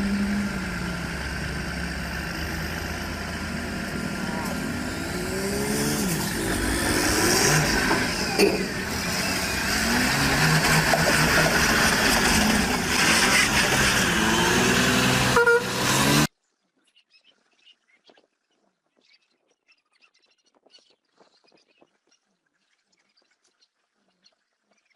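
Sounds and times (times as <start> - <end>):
vehicle engines revving: 0.0 - 16.3
vehicle horn: 13.0 - 16.2.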